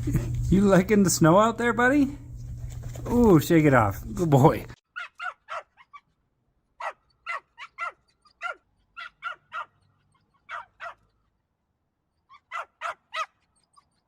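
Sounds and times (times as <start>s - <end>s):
dog barking high-pitched: 4.9s - 6.0s, 6.8s - 11.0s, 12.3s - 13.5s.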